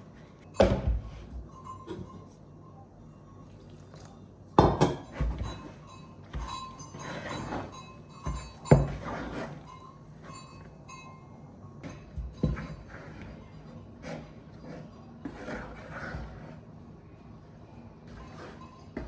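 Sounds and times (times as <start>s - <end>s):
dishes and pots clanking: 0.4s - 2.4s, 4.6s - 13.2s.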